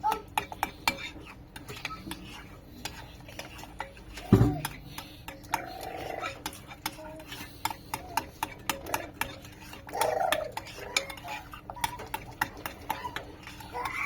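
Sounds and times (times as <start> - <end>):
utensil clinking against a bowl: 0.0 - 14.0.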